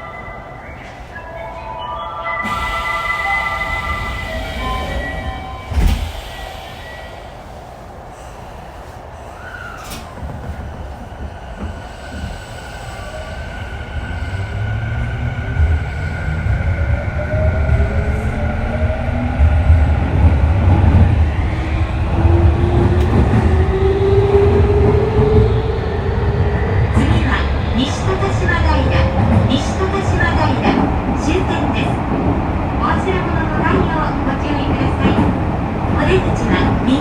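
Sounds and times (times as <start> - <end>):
train wheels rumbling on rail: 2.4 - 37.0
click: 23.0 - 23.3.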